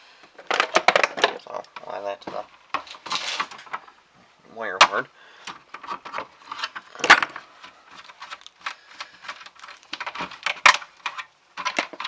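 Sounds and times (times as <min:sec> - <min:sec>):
scrap pieces clattering: 0:02.7 - 0:03.8, 0:05.7 - 0:12.0.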